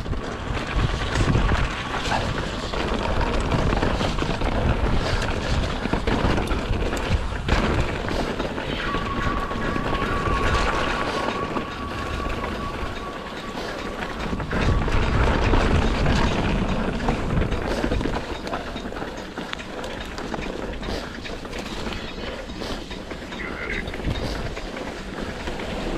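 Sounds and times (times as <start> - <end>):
bike knocks and rattles: 0.0 - 8.7, 13.9 - 23.3
bike tyres rumbling: 0.0 - 25.9
wind buffeting microphone: 0.0 - 25.9
steady high-pitched tone: 8.4 - 15.0.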